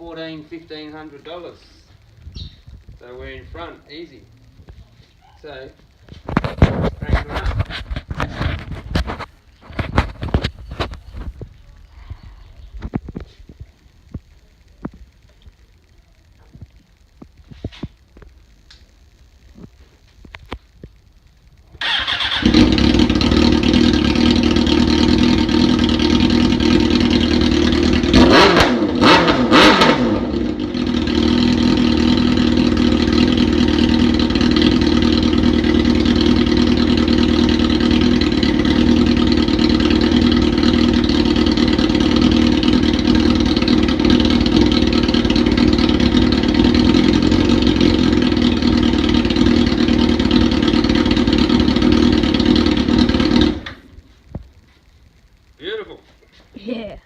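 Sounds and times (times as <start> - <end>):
engine throttle blips: 21.8 - 55.6
motorcycle engine idling: 21.8 - 55.6.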